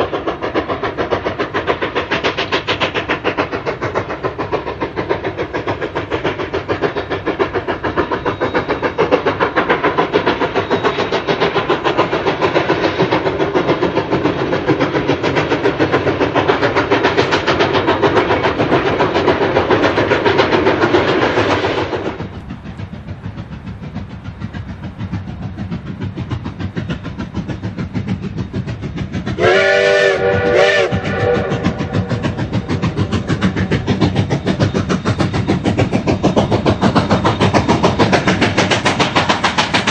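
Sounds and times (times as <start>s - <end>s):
steam locomotive running: 0.0s - 39.9s
steam whistle blasts: 29.4s - 32.3s.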